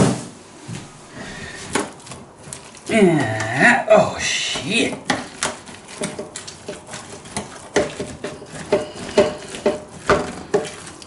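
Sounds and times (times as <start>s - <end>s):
potato masher knocking on pot: 4.5s - 11.0s.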